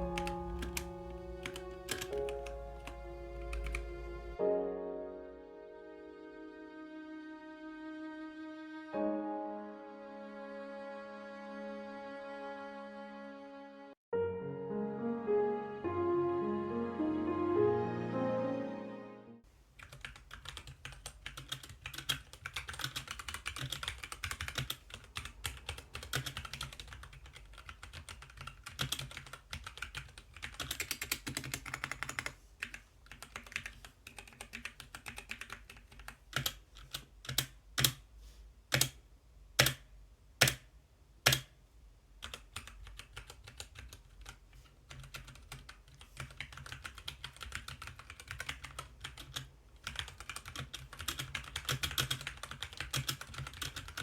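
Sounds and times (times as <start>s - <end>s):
mechanical keyboard typing: 0.0s - 3.9s, 19.8s - 38.0s, 38.7s - 39.0s, 39.6s - 40.7s, 41.3s - 41.5s, 42.2s - 54.0s.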